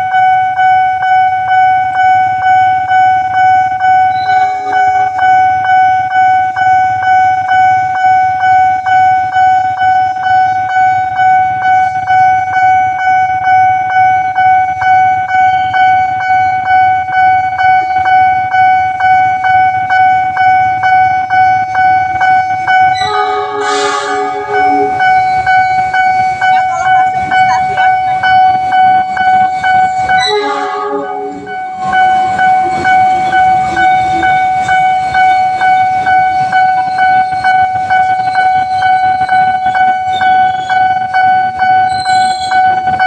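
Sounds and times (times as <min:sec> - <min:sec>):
pulsing level crossing alarm: 0:00.0 - 0:43.0
loud multi-pitched horn: 0:03.8 - 0:06.7, 0:21.6 - 0:43.0.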